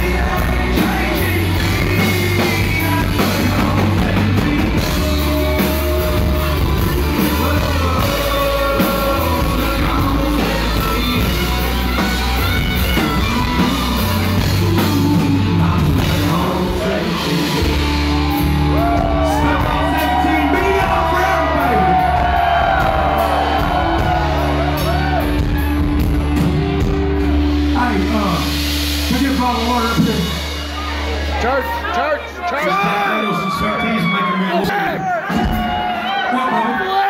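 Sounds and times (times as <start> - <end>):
lead singer singing: 0.0 - 25.7
heavy bass: 0.0 - 32.4
live rock band playing: 0.0 - 37.0.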